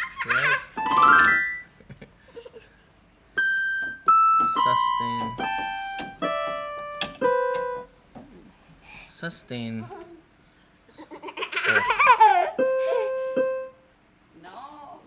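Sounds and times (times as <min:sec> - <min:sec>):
electronic keyboard piano notes: 0:00.0 - 0:01.7, 0:03.3 - 0:08.0, 0:12.6 - 0:13.8.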